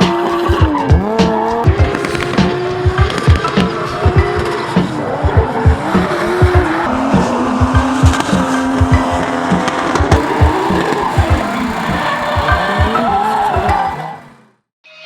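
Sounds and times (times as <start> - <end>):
music with drum beat: 0.0 - 13.0
tyres squealing: 0.0 - 14.4
car engine revving hard: 0.0 - 14.6.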